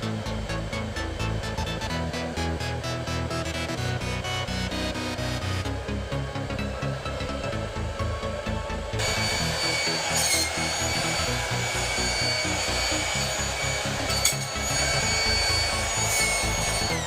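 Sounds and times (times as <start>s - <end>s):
hairdryer hissing and whining: 2.8s - 17.0s.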